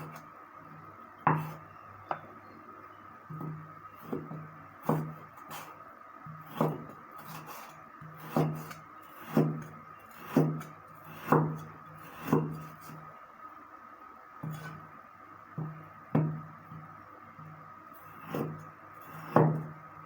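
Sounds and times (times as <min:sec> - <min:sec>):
knife striking wooden chopping board: 0:08.2 - 0:09.6, 0:19.2 - 0:19.6.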